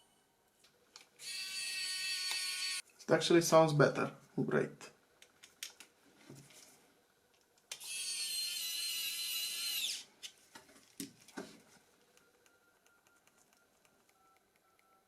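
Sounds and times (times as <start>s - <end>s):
mobile phone buzzing: 1.2s - 2.8s.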